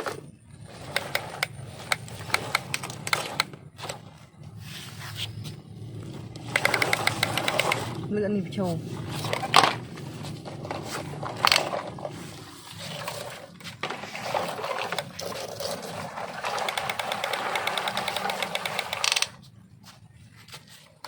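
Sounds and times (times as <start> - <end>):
mechanism clicking rapidly: 0.7 - 4.0, 6.1 - 8.1, 14.7 - 19.4.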